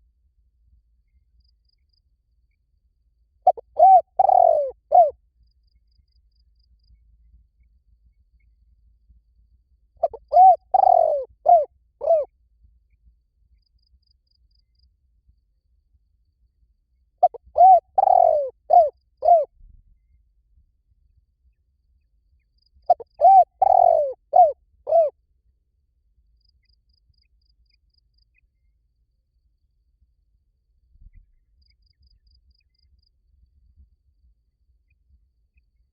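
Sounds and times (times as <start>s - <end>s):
dove cooing: 3.5s - 5.1s, 10.0s - 12.3s, 17.2s - 19.5s, 22.9s - 25.1s.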